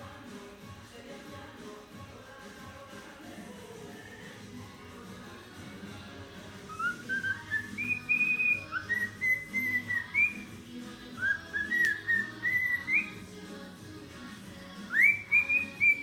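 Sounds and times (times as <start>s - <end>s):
cockatiel whistling: 6.6s - 10.5s, 11.2s - 13.2s, 14.9s - 16.0s.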